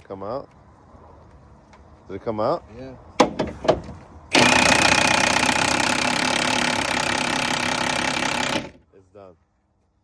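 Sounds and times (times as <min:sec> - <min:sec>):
impact wrench hammering on bolt: 0:03.2 - 0:08.8.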